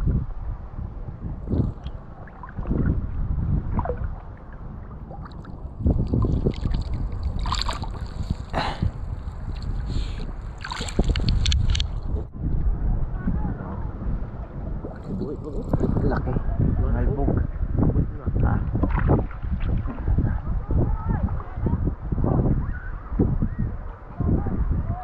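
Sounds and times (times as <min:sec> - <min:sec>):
wind buffeting microphone: 0:00.0 - 0:25.0
seawater sloshing and splashing: 0:03.6 - 0:12.1.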